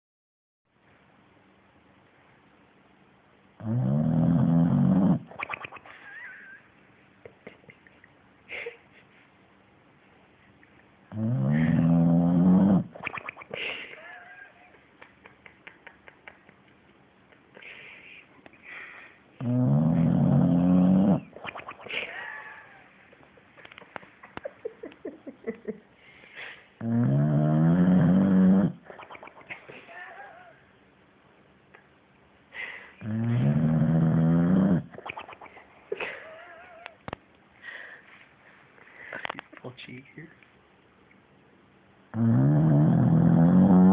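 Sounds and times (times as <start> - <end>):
pet snoring: 3.6 - 5.4, 11.1 - 13.0, 19.4 - 21.3, 26.8 - 28.9, 33.0 - 35.0, 42.1 - 43.9.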